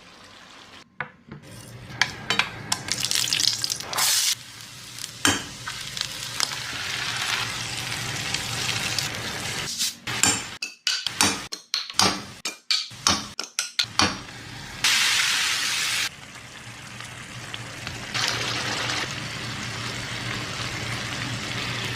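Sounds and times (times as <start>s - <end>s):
chicken sizzling in a pan: 2.9s - 10.0s, 14.3s - 21.9s.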